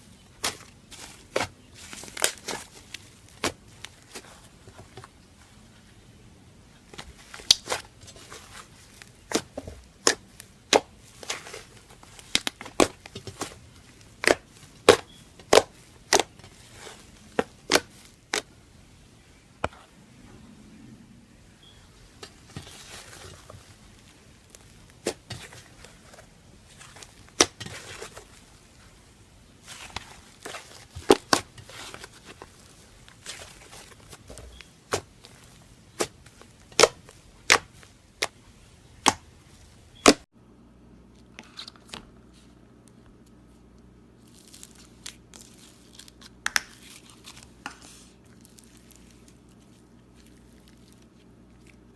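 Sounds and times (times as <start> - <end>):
slime squishing: 0.2 - 5.1, 6.9 - 18.5, 22.3 - 29.0, 29.6 - 40.2, 44.2 - 51.9.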